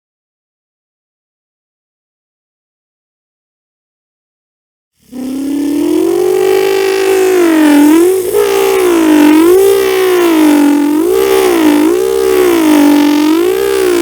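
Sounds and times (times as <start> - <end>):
man imitating a wailing siren: 5.1 - 14.0.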